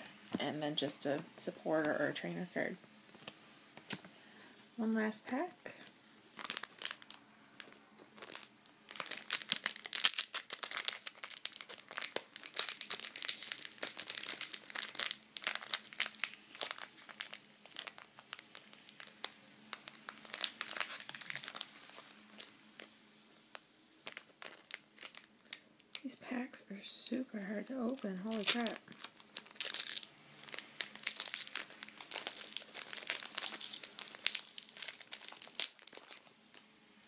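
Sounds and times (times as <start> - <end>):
booster pack wrapper crinkling: 6.4 - 22.9, 23.5 - 26.2, 27.7 - 36.7.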